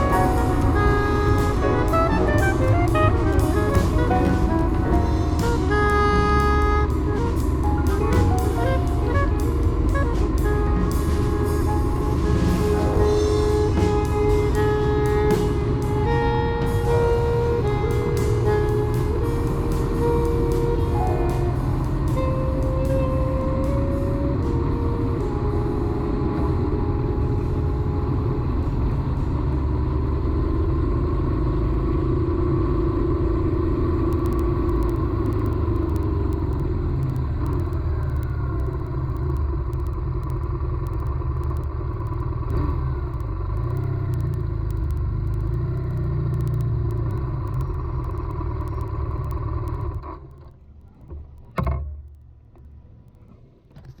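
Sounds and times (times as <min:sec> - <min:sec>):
wind rumble: 0:00.0 - 0:41.2
engine hum: 0:00.0 - 0:54.0.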